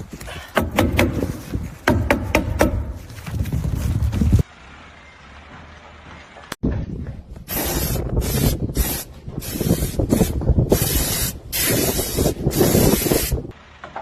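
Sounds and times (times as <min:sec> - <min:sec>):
pressurised spray hissing: 0:07.5 - 0:13.6.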